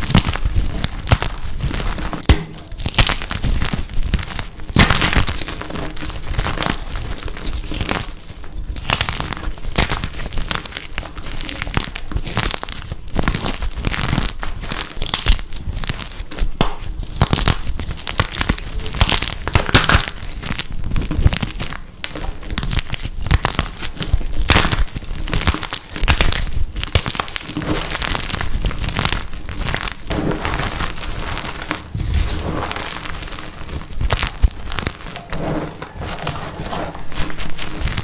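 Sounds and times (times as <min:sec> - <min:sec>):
chalk crushing and crumbling: 0:00.0 - 0:38.0.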